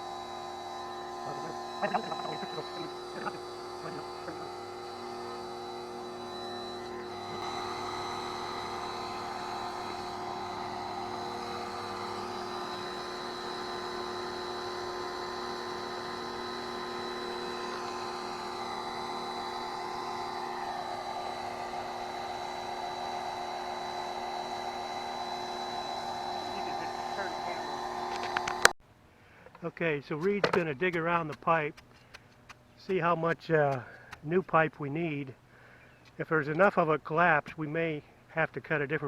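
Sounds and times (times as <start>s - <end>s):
pressure washer humming and whining: 0.0s - 28.8s.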